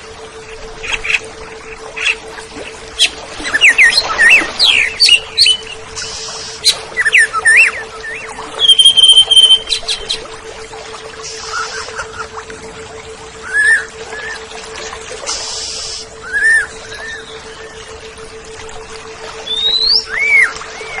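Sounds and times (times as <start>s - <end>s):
bird singing whistles and clicks: 7.0s - 9.8s, 19.5s - 21.0s.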